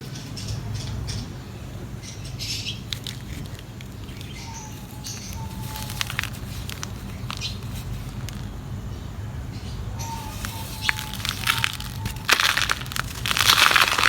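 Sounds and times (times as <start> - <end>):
steady low hum: 0.0 - 14.0
dry mud crumbling: 2.9 - 8.6, 10.0 - 14.0.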